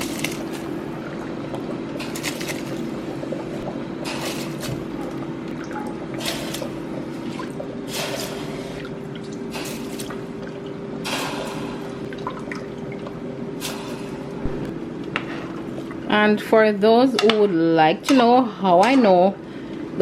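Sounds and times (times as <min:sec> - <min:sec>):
water sloshing in a bowl: 0:00.0 - 0:13.9
steady low hum: 0:00.0 - 0:20.0.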